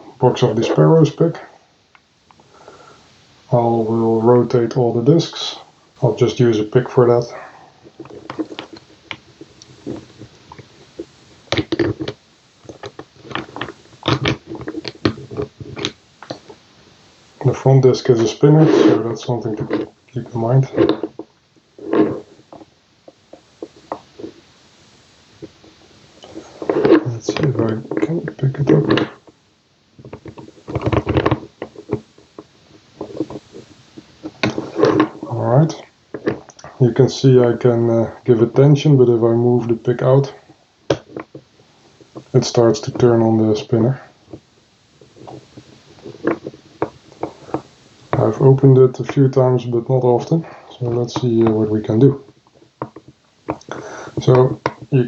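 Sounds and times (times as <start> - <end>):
lock discs clicking and rattling: 11.5 - 16.6
short scrapes: 18.2 - 21.1.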